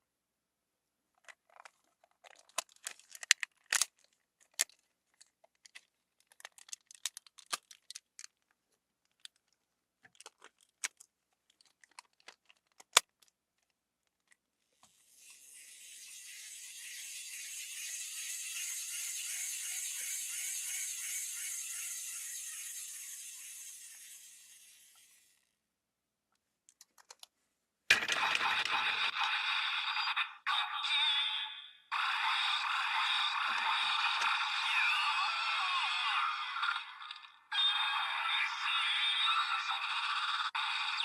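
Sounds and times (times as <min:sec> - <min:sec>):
plastic toy parts clicking: 0:01.2 - 0:14.4, 0:26.7 - 0:27.3.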